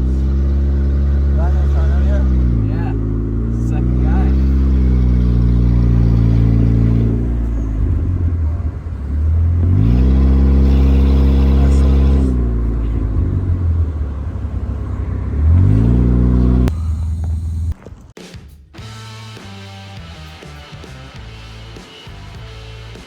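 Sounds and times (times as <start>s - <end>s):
car engine idling and revving: 0.0s - 17.9s.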